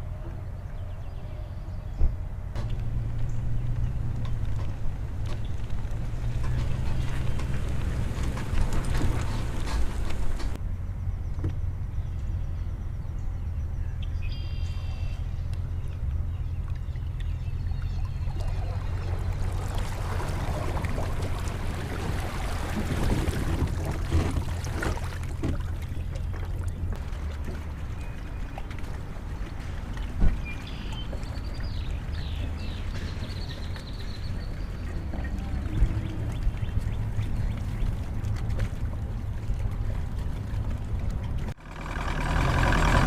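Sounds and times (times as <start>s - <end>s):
water splashing and sloshing: 0.0s - 10.6s, 14.4s - 43.0s
boat motor humming: 0.0s - 43.0s.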